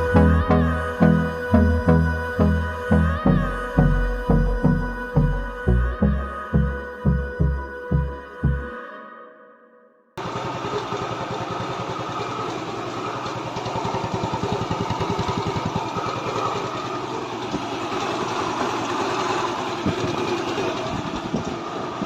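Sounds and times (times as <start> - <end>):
scooter engine running: 0.0 - 5.3, 10.2 - 22.0.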